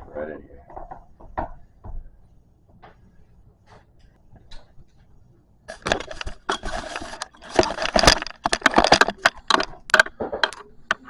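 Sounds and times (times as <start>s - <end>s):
rustling: 2.8s - 11.0s
clicks and rattles of bicycle parts: 5.7s - 11.0s.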